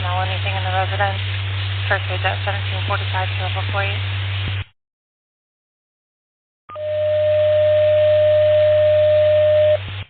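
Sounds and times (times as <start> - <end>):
radio hiss: 0.0 - 4.7
low hum: 6.7 - 10.0.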